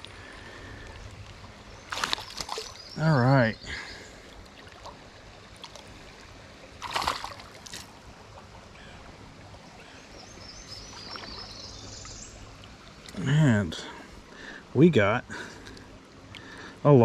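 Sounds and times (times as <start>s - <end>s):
creek water running: 0.0s - 17.0s
water splash: 1.9s - 2.8s, 6.8s - 7.9s.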